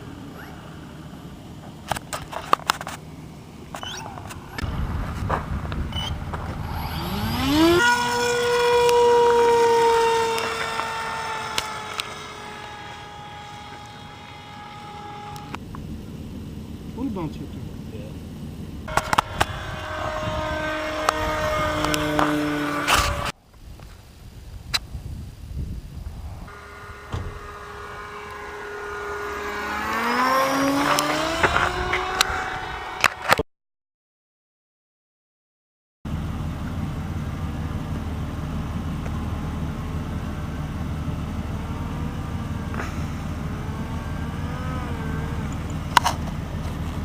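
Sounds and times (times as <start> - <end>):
model plane motor whine: 5.8 - 15.6, 18.8 - 23.4, 26.5 - 33.4, 36.5 - 47.0.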